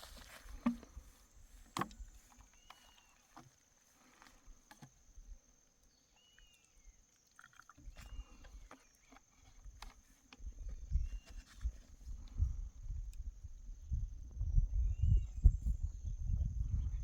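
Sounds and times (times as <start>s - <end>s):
insects droning: 0.0s - 17.0s
wind on microphone: 10.4s - 17.0s.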